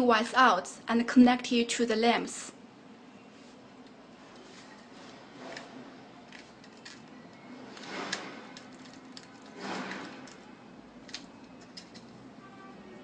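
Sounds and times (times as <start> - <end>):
scraping handling sounds: 7.7 - 10.5.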